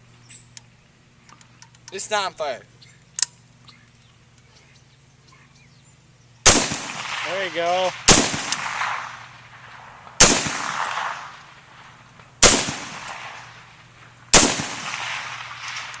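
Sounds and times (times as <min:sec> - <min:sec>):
rifle shots: 0:06.4 - 0:16.0.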